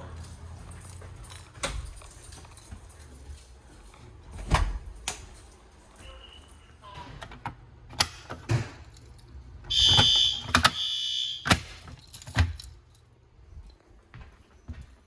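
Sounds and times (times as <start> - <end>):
fire alarm tone: 6.0 - 6.8, 9.7 - 11.8
handling clicks and knocks: 11.5 - 13.1.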